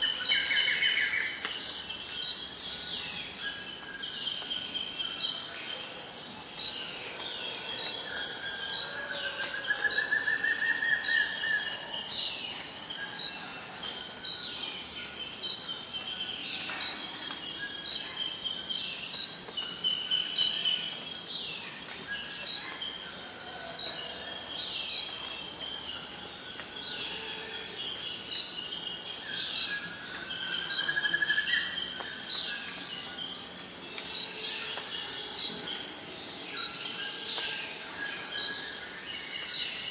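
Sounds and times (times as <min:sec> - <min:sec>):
high-pitched insect drone: 0:34.0 - 0:39.8.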